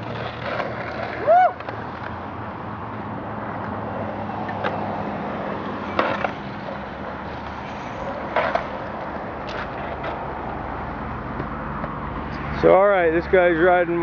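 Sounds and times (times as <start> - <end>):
skateboard rolling over pavement: 0.0 - 12.8
skateboard sharp clacks: 5.6 - 6.8.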